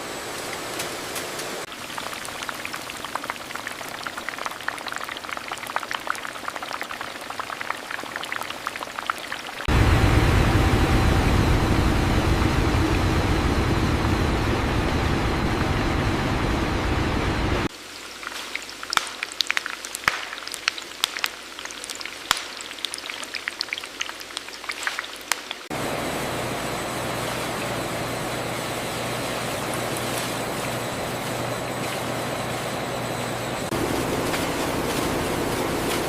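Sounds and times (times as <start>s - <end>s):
factory machinery noise: 9.7s - 17.7s, 25.7s - 36.0s
low machine hum: 9.7s - 17.7s, 25.7s - 36.0s
crackling and popping: 17.1s - 25.7s.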